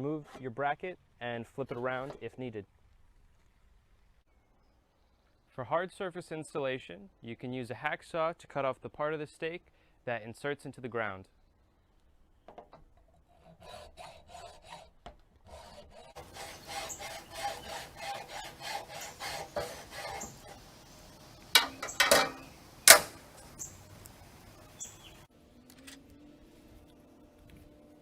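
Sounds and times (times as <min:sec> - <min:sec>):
hacksaw cutting metal: 0:15.5 - 0:23.5.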